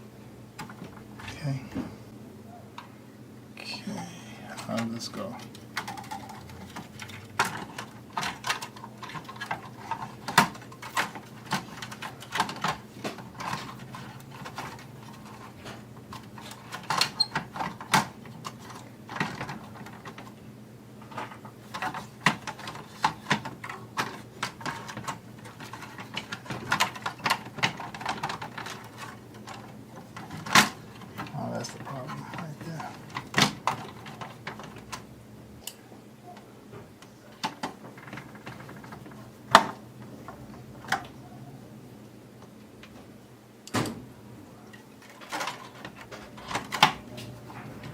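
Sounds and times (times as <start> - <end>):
plastic parts clicking and knocking: 0.6 - 1.0, 4.6 - 20.4, 21.0 - 35.1, 36.9 - 41.2, 44.7 - 47.9.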